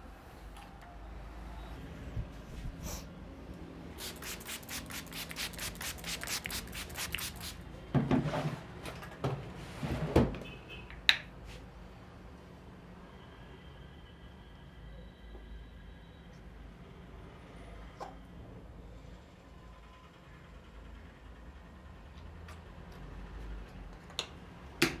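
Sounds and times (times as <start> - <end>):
hands rubbing in head massage: 4.0 - 7.6.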